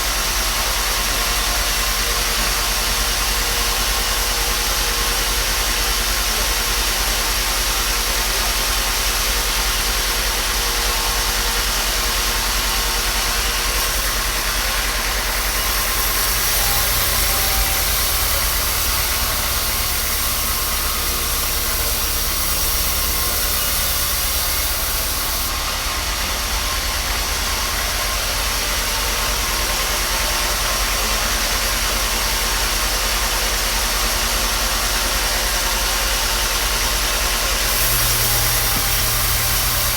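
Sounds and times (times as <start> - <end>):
motor-driven machine running: 2.8 - 39.9
loud high hiss: 13.3 - 25.6, 37.6 - 39.9.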